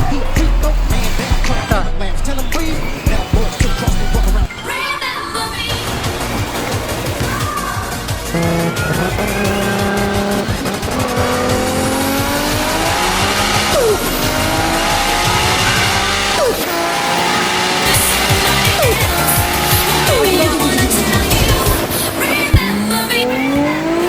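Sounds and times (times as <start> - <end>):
music with a beat: 0.0 - 4.5, 17.8 - 22.9
car engine revving: 0.0 - 24.0.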